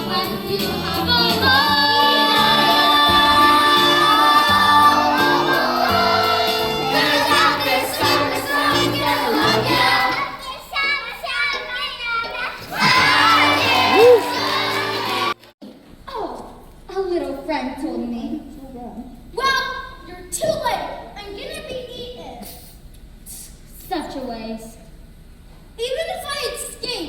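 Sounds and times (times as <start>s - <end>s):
musical accompaniment: 0.0s - 10.4s, 11.5s - 15.4s
children singing: 0.0s - 10.7s, 12.6s - 15.4s
voices shouting: 2.0s - 10.3s, 12.6s - 15.4s.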